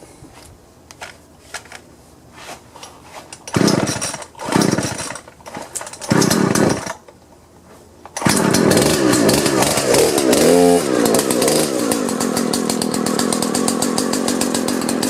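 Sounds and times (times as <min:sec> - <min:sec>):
chainsaw engine firing in bursts: 0:03.5 - 0:07.0, 0:08.2 - 0:15.0.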